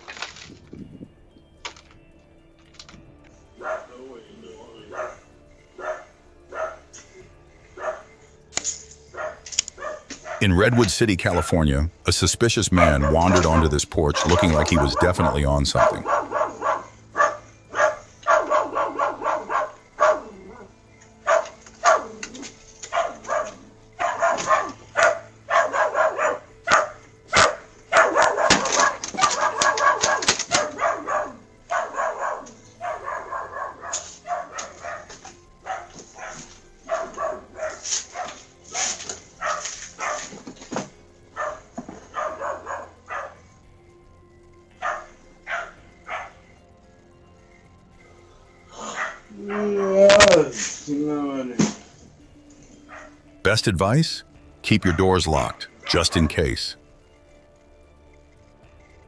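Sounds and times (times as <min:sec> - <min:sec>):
dog barking: 0:03.6 - 0:04.0, 0:04.9 - 0:06.8, 0:07.8 - 0:08.1, 0:09.1 - 0:10.4, 0:15.9 - 0:22.2, 0:22.9 - 0:40.4, 0:41.4 - 0:43.4, 0:44.8 - 0:46.4, 0:48.8 - 0:49.9, 0:52.8 - 0:53.2.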